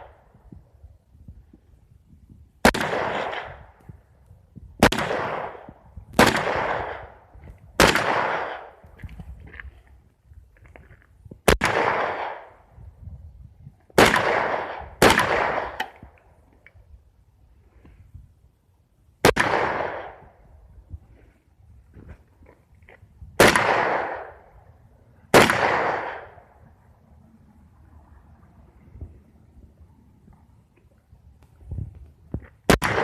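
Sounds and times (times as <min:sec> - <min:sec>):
rifle shots: 0:02.6 - 0:03.7, 0:04.8 - 0:07.2, 0:07.8 - 0:08.8, 0:11.4 - 0:12.6, 0:14.0 - 0:16.0, 0:19.2 - 0:20.3, 0:23.4 - 0:24.5, 0:25.3 - 0:26.5, 0:32.7 - 0:33.0.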